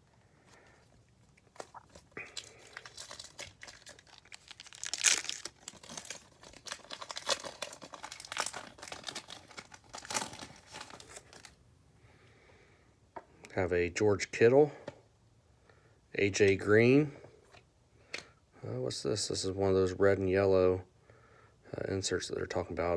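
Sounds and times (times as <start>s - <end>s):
wrapper crinkling: 0.6s - 11.6s.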